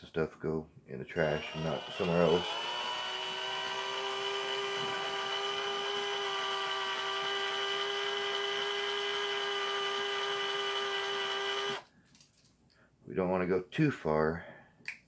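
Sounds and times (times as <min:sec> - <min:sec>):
electric drill whining: 0:01.3 - 0:11.9.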